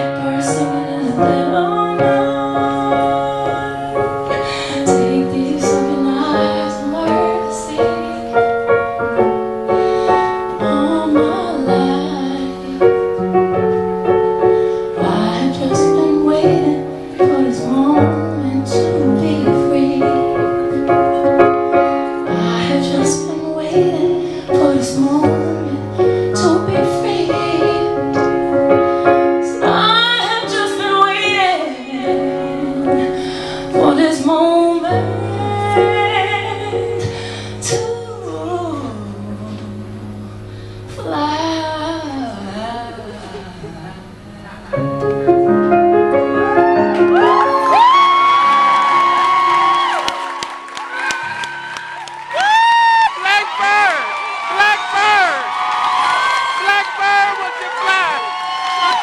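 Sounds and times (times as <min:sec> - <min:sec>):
woman singing: 0:00.0 - 0:08.8, 0:10.4 - 0:13.3, 0:14.9 - 0:21.4, 0:22.2 - 0:28.4, 0:29.4 - 0:40.2, 0:41.0 - 0:44.8
piano music: 0:00.0 - 0:59.0.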